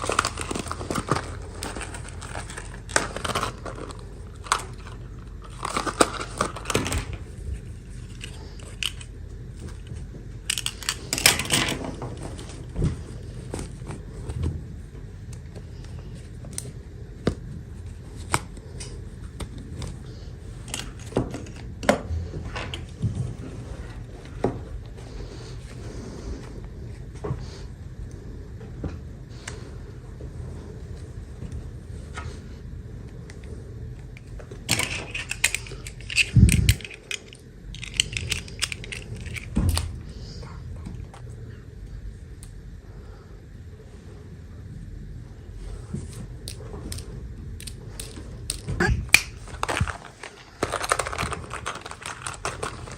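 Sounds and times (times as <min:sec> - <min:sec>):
packaging rustling: 0:00.0 - 0:14.3, 0:49.2 - 0:52.9
low steady hum: 0:00.0 - 0:52.9
plastic toys clicking and tapping: 0:10.5 - 0:11.8, 0:34.7 - 0:39.9, 0:46.5 - 0:52.9.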